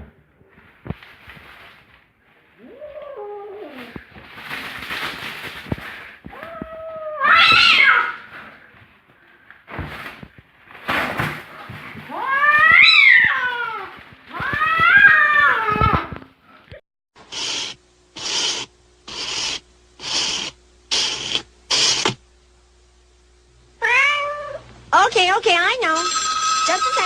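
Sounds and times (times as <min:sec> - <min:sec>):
cat yowling: 0:02.6 - 0:04.0, 0:06.3 - 0:08.3, 0:12.1 - 0:16.1, 0:23.8 - 0:24.6.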